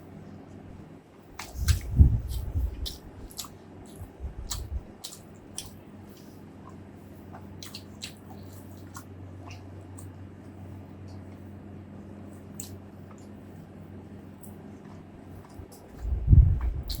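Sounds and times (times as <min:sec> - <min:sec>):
wet mouth clicks and smacks chewing: 0:01.4 - 0:10.2, 0:12.5 - 0:13.4, 0:14.4 - 0:17.0
low muffled thumps: 0:16.0 - 0:16.9.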